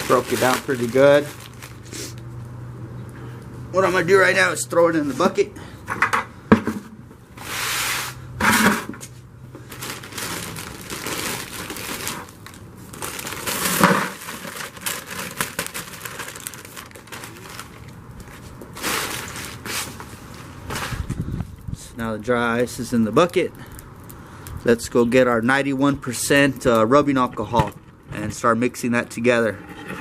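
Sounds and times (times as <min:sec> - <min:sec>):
dry ice pouring into bucket: 0:00.0 - 0:01.6, 0:13.0 - 0:17.7
plastic bag crinkling: 0:00.0 - 0:02.2, 0:09.6 - 0:21.1.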